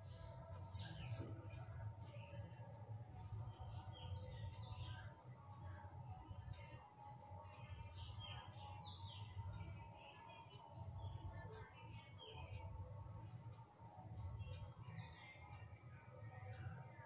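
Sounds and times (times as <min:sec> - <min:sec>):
low steady hum: 0:00.0 - 0:17.0
faint bird chirps: 0:03.2 - 0:13.3.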